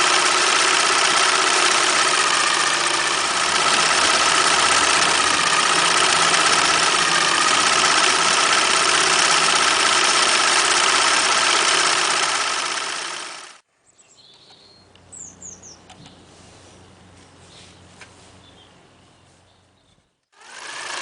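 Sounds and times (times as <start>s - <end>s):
electric sewing machine whine: 0.0s - 13.6s, 20.4s - 21.0s.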